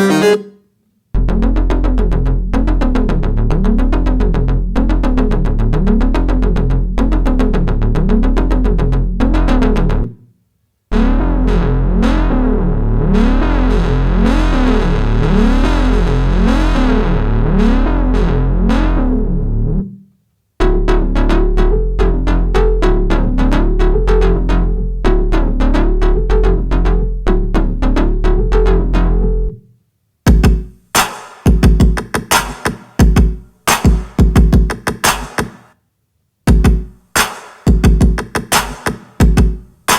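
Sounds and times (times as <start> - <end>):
synthesizer riff: 0.0 - 0.6
steady bass: 1.2 - 10.2, 10.9 - 20.0, 20.6 - 29.6
drum machine hits: 30.3 - 35.6, 36.5 - 39.9.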